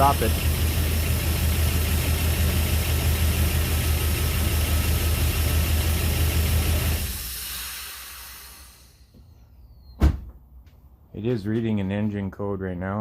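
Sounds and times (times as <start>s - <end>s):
car engine idling: 0.0s - 9.1s.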